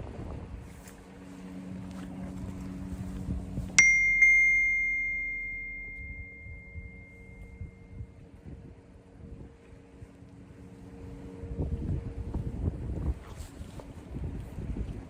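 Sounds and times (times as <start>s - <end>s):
wind noise: 0.0s - 1.1s, 11.3s - 15.0s
low hum: 0.0s - 15.0s
metallic bell ding: 3.8s - 7.8s.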